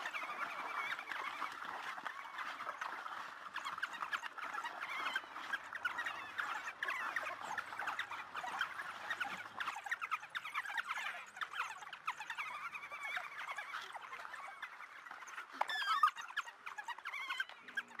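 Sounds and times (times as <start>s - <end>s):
wild dogs chirping: 0.0s - 18.0s.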